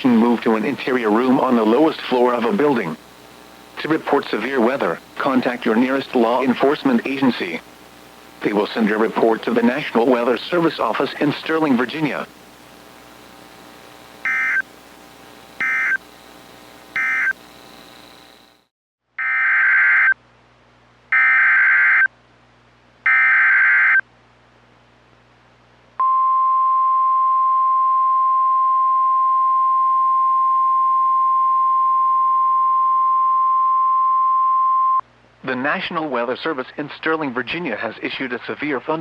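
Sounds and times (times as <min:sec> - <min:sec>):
digital data bursts: 0:00.6 - 0:18.7
steady alarm tone: 0:14.1 - 0:14.8, 0:15.5 - 0:16.2, 0:16.8 - 0:20.1.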